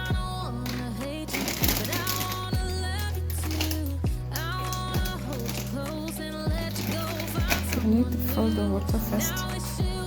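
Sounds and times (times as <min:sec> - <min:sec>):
pop music: 0:00.0 - 0:10.0
kick drum beats: 0:00.1 - 0:00.4, 0:02.6 - 0:02.8, 0:04.0 - 0:04.4, 0:05.0 - 0:05.3, 0:06.5 - 0:06.8, 0:07.4 - 0:07.7, 0:08.9 - 0:09.2, 0:09.8 - 0:10.0.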